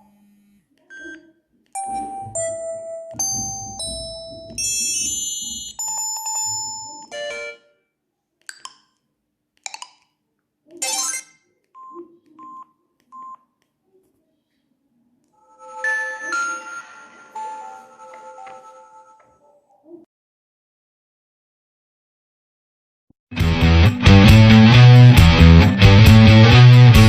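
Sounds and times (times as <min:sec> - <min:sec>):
electronic ringtone melody: 0:01.8 - 0:07.7, 0:15.4 - 0:19.5.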